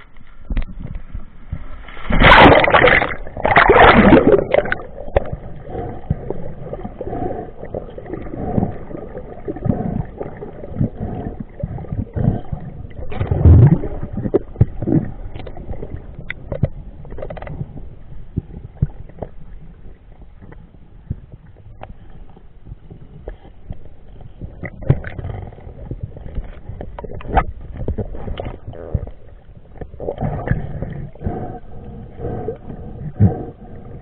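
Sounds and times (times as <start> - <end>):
water gurgling and sloshing: 0.0 - 34.0
water churning bursts: 1.9 - 16.0.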